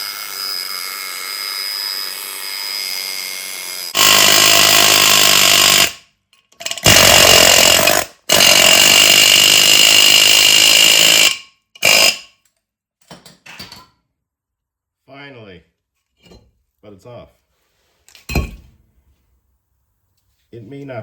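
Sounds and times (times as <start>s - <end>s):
pneumatic air hammer: 6.6s - 12.3s.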